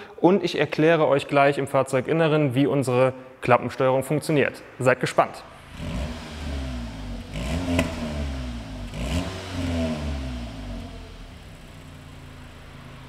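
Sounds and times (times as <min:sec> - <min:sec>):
car engine revving: 0:05.5 - 0:13.0
exhaust pops: 0:05.6 - 0:11.8.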